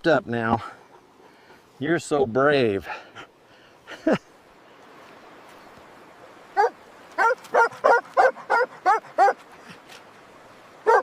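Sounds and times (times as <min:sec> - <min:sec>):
puppy yipping: 0:06.6 - 0:09.4.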